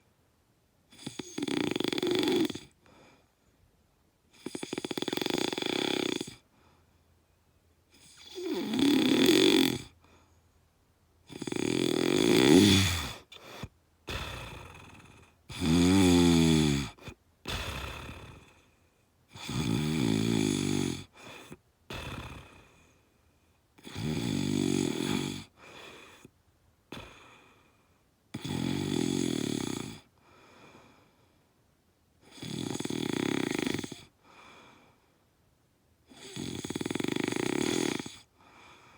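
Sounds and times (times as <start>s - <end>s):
loud snoring: 0.9s - 2.8s, 4.4s - 6.4s, 8.0s - 10.0s, 11.3s - 18.7s, 19.3s - 22.8s, 23.8s - 26.3s, 26.9s - 27.5s, 28.4s - 30.1s, 32.2s - 34.2s, 36.1s - 38.3s
soft breathing: 2.7s - 3.7s, 6.4s - 7.6s, 9.9s - 10.7s, 30.2s - 31.6s, 34.1s - 35.3s, 38.3s - 38.9s.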